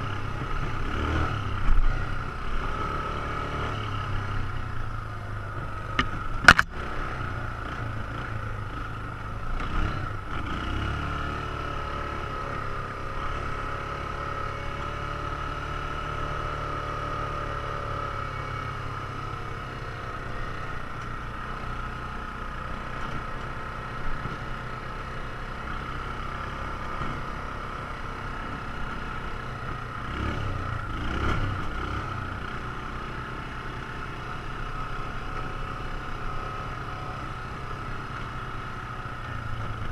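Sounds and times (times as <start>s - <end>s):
atv engine running: 0.0s - 39.9s.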